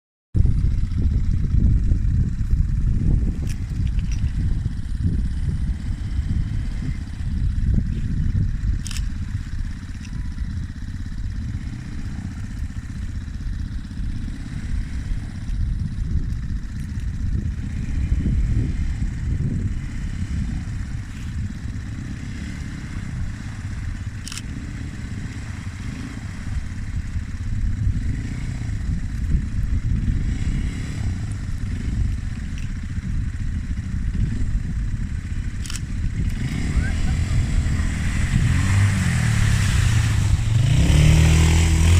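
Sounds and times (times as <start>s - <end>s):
atv engine rumbling: 0.4s - 41.9s
sharp clicks: 8.8s - 9.2s, 24.2s - 24.6s, 35.6s - 36.7s.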